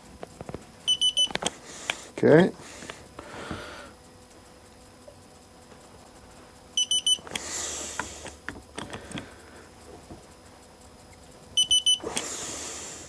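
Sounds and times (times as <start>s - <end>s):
short high-pitched electronic beeps: 0.9s - 1.4s, 6.8s - 7.2s, 11.6s - 12.1s
tool clicking: 7.0s - 9.3s.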